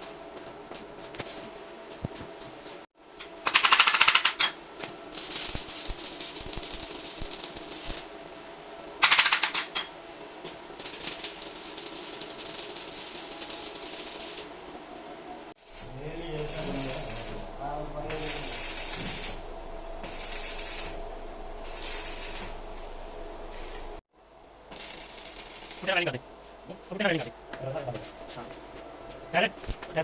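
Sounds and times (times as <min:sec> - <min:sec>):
arc welding crackling: 0:00.0 - 0:02.8, 0:03.4 - 0:08.3, 0:09.0 - 0:14.6, 0:15.5 - 0:24.0, 0:24.7 - 0:27.8, 0:29.3 - 0:30.0.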